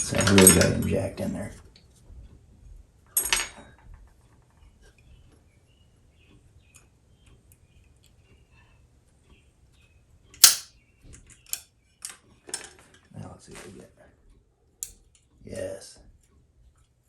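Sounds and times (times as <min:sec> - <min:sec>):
sharp metallic click: 0:10.4 - 0:10.7.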